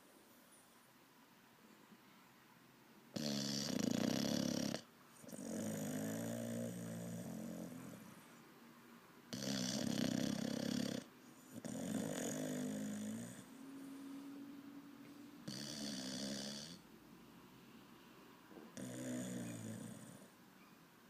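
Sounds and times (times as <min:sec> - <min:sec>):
puppy snoring: 0:03.1 - 0:08.4, 0:09.3 - 0:14.4, 0:15.4 - 0:16.8, 0:18.6 - 0:20.4.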